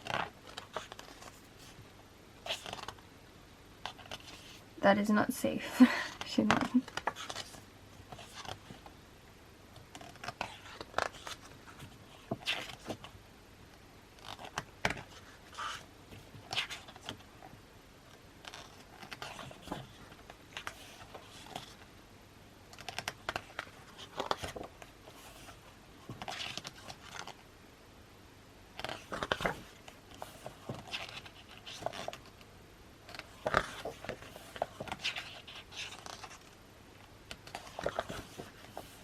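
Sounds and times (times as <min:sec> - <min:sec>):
photobook pages turning: 0:00.0 - 0:01.8, 0:02.4 - 0:03.0, 0:03.8 - 0:04.6, 0:06.1 - 0:08.9, 0:09.9 - 0:13.2, 0:14.2 - 0:17.3, 0:18.4 - 0:21.9, 0:22.7 - 0:27.4, 0:28.8 - 0:32.4, 0:33.1 - 0:36.6, 0:37.3 - 0:39.0.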